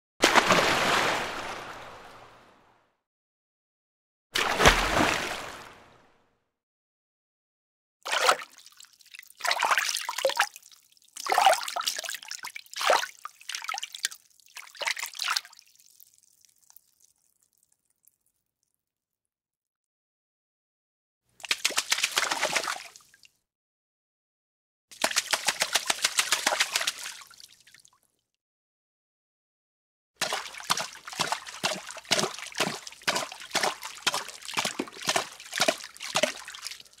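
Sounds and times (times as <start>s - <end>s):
water splashing: 0.2s - 2.4s, 4.4s - 5.9s, 8.1s - 8.6s, 21.4s - 23.2s, 25.0s - 27.6s, 30.2s - 37.0s.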